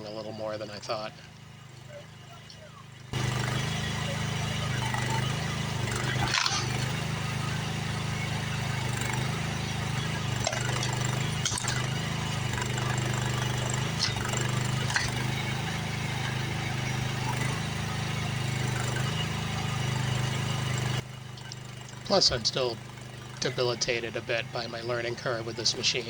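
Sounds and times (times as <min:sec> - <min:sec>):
excavator engine running: 0:00.0 - 0:26.0
wood siding cracking: 0:06.0 - 0:07.1.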